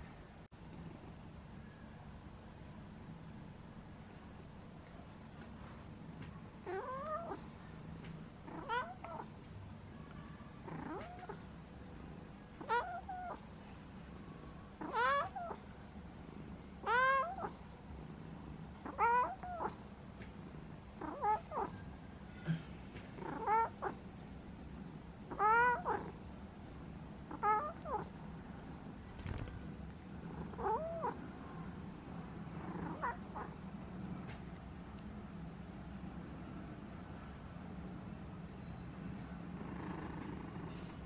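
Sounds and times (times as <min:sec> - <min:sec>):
cat meowing: 0:06.6 - 0:07.4, 0:08.5 - 0:09.3, 0:10.6 - 0:11.4, 0:12.6 - 0:13.4, 0:14.8 - 0:15.6, 0:16.8 - 0:17.6, 0:18.8 - 0:19.8, 0:21.0 - 0:21.8, 0:23.2 - 0:24.0, 0:25.3 - 0:26.2, 0:27.3 - 0:28.1, 0:30.3 - 0:31.2, 0:32.7 - 0:33.5.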